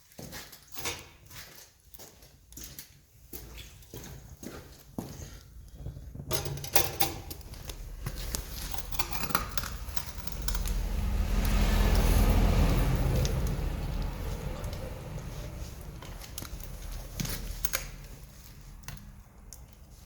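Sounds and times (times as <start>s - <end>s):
low rumbling rush: 7.4s - 19.4s.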